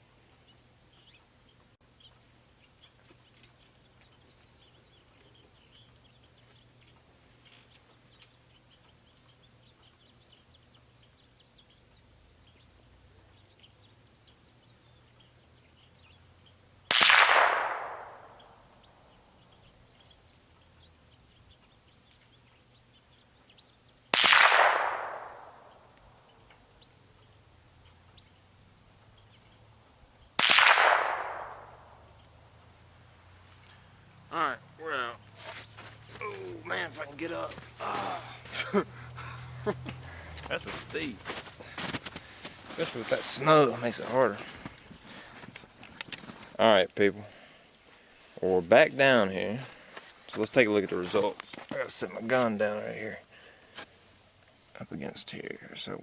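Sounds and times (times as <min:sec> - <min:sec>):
rifle shots echoing: 0:16.9 - 0:18.6, 0:24.1 - 0:25.9, 0:30.4 - 0:32.1.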